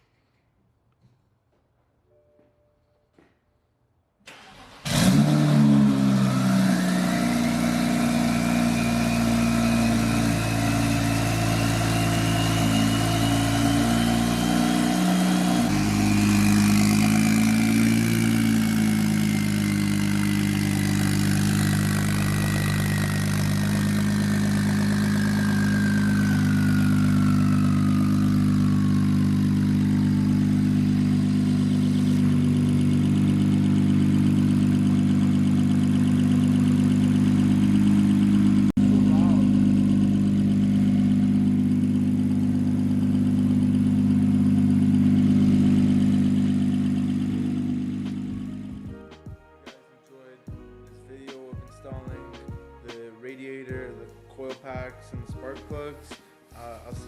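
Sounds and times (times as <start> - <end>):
car engine starting and idling: 4.2 - 48.9.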